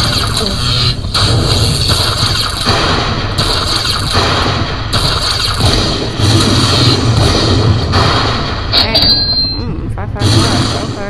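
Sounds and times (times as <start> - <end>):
slot machine electronic sounds: 8.8 - 9.6.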